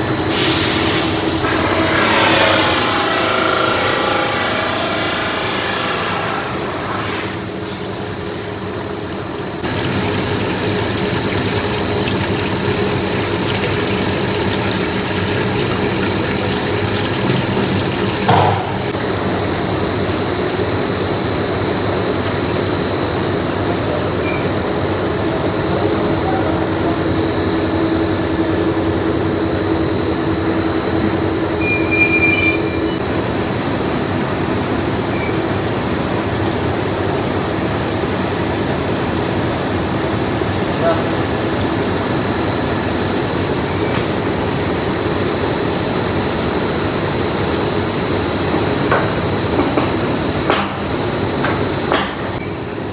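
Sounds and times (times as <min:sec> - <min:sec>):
high machine whine: 0:00.0 - 0:09.8
factory machinery running: 0:00.0 - 0:52.9.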